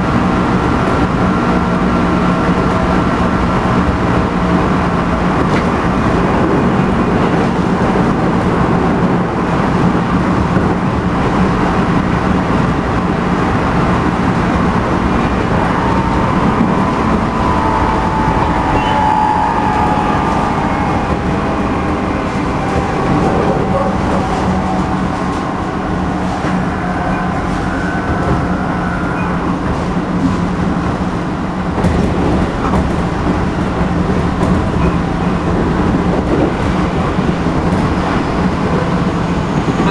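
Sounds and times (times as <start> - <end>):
train motor hum: 0.0 - 39.9
train rolling rumble: 0.0 - 39.9
surging wavering drone: 12.5 - 31.7.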